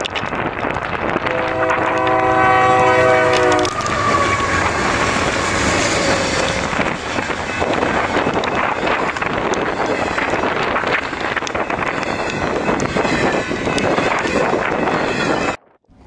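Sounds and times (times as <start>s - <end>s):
train passing rumble: 0.0s - 16.0s
locomotive air horn blast: 1.2s - 7.3s
wheels clicking over rail joints: 3.2s - 14.5s.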